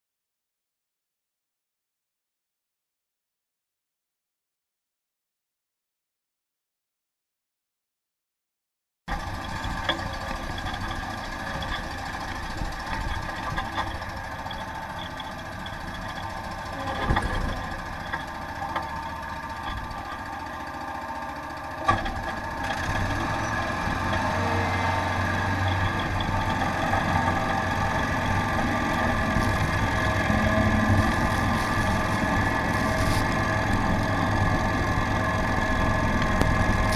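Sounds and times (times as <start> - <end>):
lawn tractor engine running: 9.1 - 36.9.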